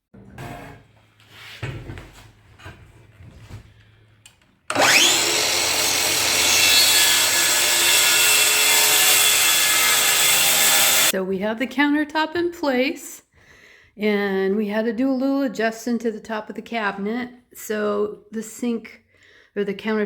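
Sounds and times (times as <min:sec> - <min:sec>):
power tool motor whining: 0:04.7 - 0:11.1.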